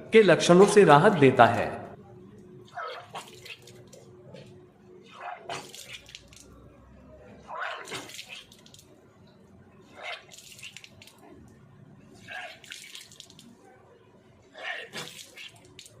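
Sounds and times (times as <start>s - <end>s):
water splashing: 5.4s - 6.6s, 7.8s - 9.0s, 10.1s - 11.2s, 12.2s - 13.5s, 14.9s - 16.0s.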